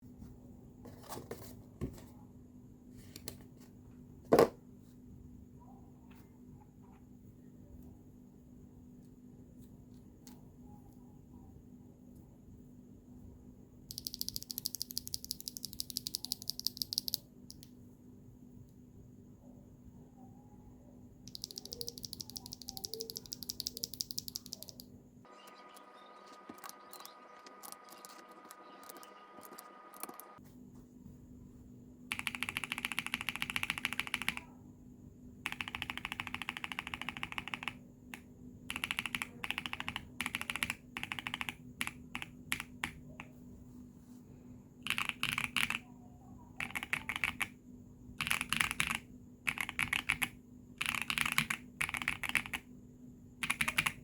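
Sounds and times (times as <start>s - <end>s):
faint steady tone: 4.7s - 54.0s
mechanical keyboard key clicks: 13.9s - 17.7s.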